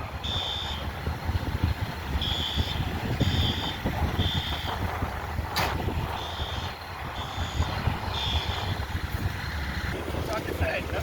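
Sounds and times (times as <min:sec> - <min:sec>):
diesel engine rumble: 0:00.0 - 0:11.0
backup alarm beeping: 0:00.2 - 0:00.9, 0:02.1 - 0:04.8, 0:06.0 - 0:08.8.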